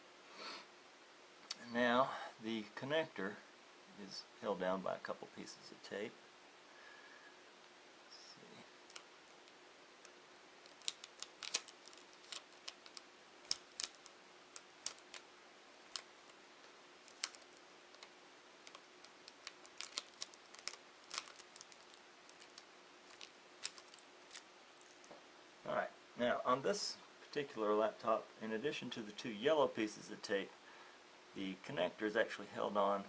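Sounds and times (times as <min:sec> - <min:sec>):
fingernails peeling tape: 0:10.0 - 0:15.2, 0:15.9 - 0:16.1, 0:17.0 - 0:24.4.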